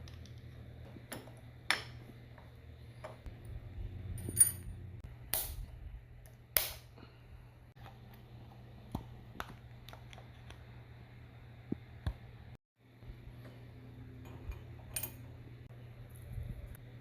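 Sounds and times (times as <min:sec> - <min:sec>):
metal tools clinking: 0:04.2 - 0:04.8, 0:14.2 - 0:15.3.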